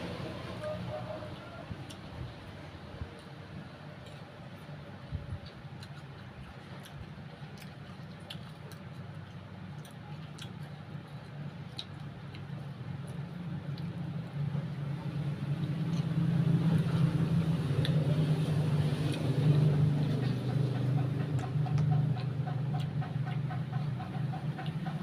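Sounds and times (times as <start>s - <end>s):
motor engine droning: 0.0s - 3.2s, 13.1s - 25.0s.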